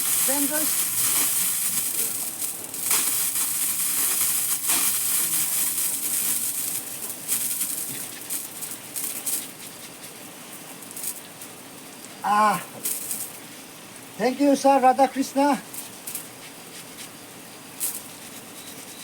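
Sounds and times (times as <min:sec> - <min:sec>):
water pouring from a pipe: 0:00.0 - 0:09.4.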